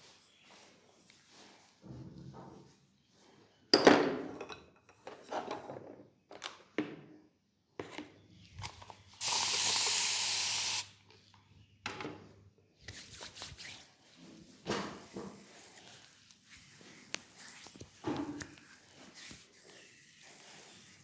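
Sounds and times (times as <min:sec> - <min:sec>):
spray hiss: 0:09.2 - 0:10.9.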